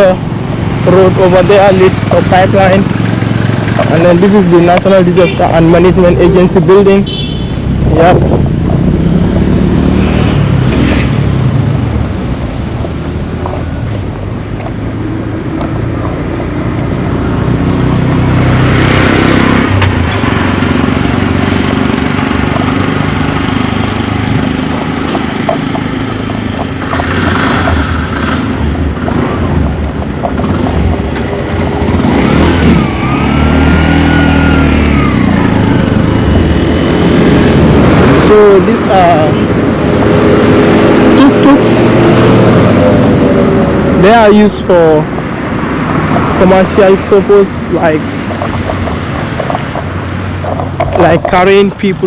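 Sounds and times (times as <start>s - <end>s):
motor vehicles passing: 0.0s - 52.0s.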